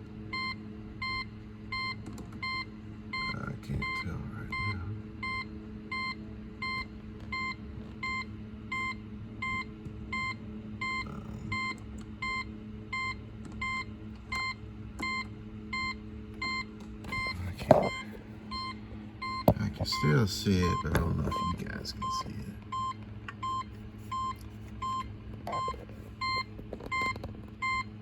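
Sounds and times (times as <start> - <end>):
steady low hum: 0.0 - 28.0
warning chime beeping: 17.2 - 22.4.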